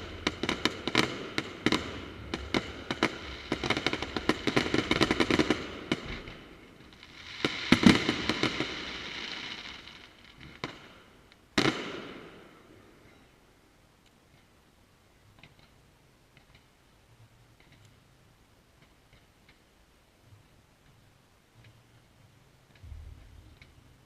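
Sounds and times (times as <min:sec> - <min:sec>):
loud firework bang: 0:00.0 - 0:06.7, 0:22.8 - 0:23.6
fireworks crackling and bursting: 0:00.0 - 0:12.7.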